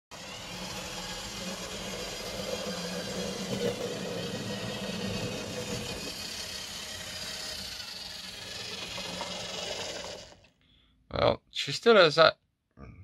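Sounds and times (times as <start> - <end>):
model train motor whine: 0.1 - 10.5.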